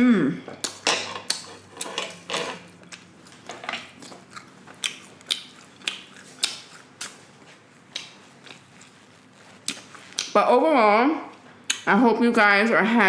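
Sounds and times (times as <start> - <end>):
chewing food: 0.6 - 10.4
sharp wet clicks: 4.8 - 7.2.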